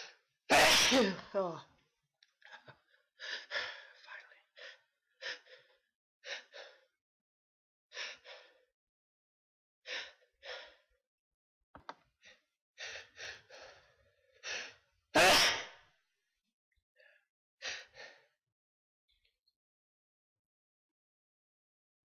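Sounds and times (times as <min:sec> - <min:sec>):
person sneezing: 0:00.5 - 0:01.4, 0:15.2 - 0:15.8.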